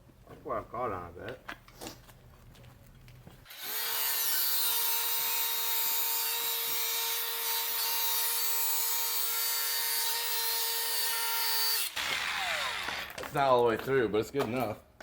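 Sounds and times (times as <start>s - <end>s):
electric power saw cutting metal: 3.5s - 13.2s.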